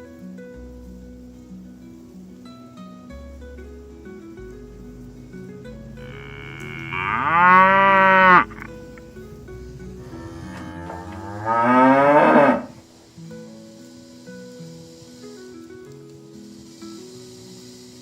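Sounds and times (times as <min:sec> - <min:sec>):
soft background music: 0:00.0 - 0:18.0
cattle mooing: 0:06.0 - 0:09.0, 0:10.0 - 0:12.8.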